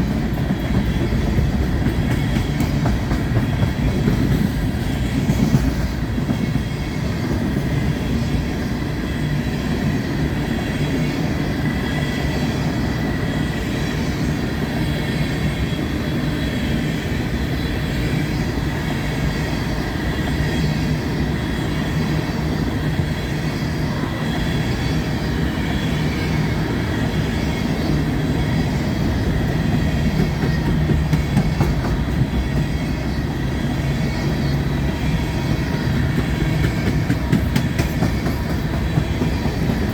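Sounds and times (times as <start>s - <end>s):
train wheels rumbling on rail: 0.0s - 39.9s.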